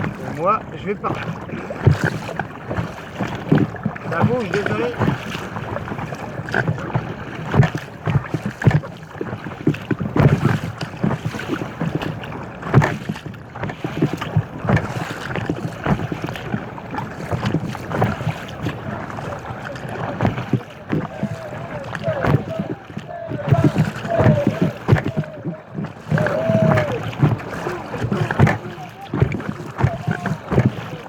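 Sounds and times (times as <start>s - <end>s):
water splashing around kayak: 0.0s - 31.0s
wind on microphone: 13.8s - 31.0s.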